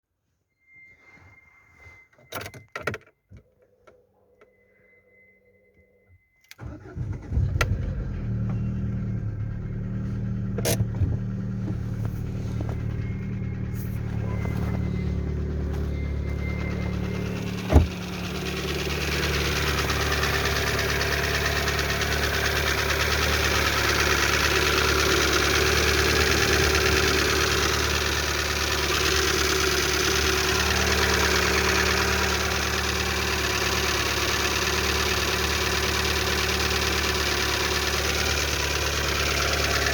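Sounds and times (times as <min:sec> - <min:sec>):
car engine cranking and idling: 0:06.5 - 0:39.9
engine knock: 0:16.2 - 0:39.9.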